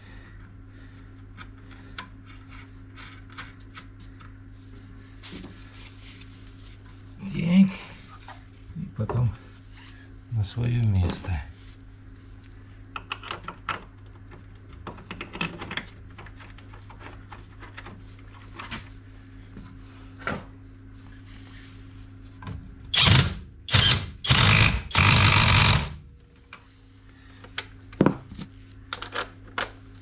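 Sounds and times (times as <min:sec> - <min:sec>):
steady low hum: 0:00.0 - 0:30.0
impact wrench bursts: 0:23.0 - 0:26.0.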